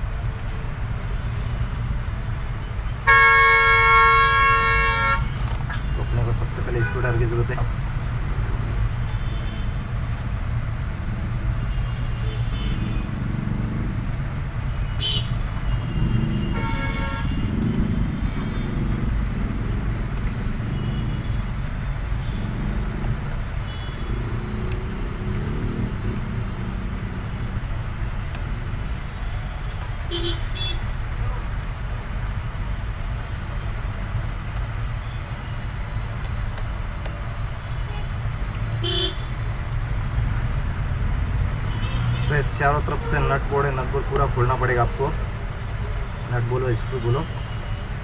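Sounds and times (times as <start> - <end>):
road traffic rumble: 0.0 - 48.0
vehicle horn: 3.0 - 6.1, 14.9 - 17.5, 23.6 - 24.4, 30.1 - 30.9, 38.8 - 39.4, 41.6 - 43.4.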